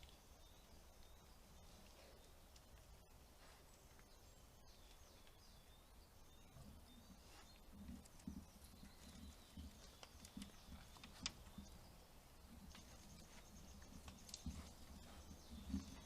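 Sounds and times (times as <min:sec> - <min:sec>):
bird chirps: 0:04.0 - 0:16.0
animal hooves stepping in mud: 0:06.3 - 0:16.0.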